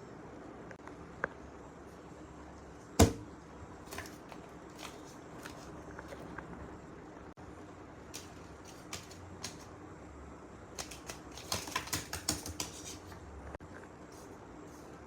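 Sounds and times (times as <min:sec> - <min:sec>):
plastic packaging crinkling: 0:03.9 - 0:06.3, 0:10.8 - 0:12.9.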